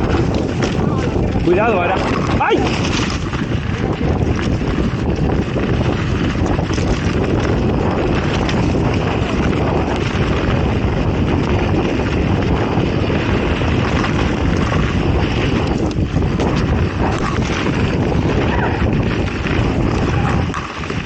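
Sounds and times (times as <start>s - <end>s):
bike clicks and knocks: 0.0s - 21.0s
tyres rumbling over trail: 0.0s - 21.0s
wind rushing over microphone: 0.0s - 21.0s.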